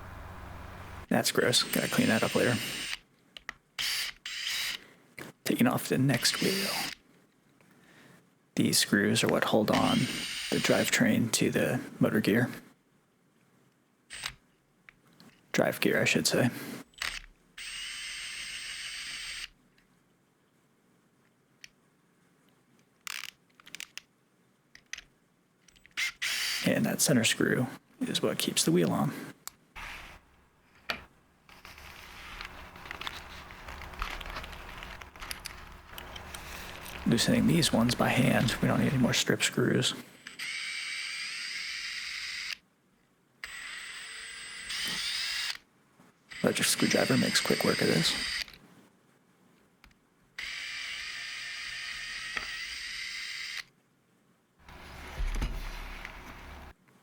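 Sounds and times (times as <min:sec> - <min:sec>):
low steady hum: 0:00.0 - 0:01.4
electric screwdriver whirring: 0:01.9 - 0:03.0, 0:03.8 - 0:04.8, 0:09.8 - 0:10.7, 0:17.0 - 0:19.5, 0:26.0 - 0:26.6, 0:31.5 - 0:37.1, 0:43.4 - 0:45.6, 0:46.3 - 0:48.6, 0:50.4 - 0:53.6.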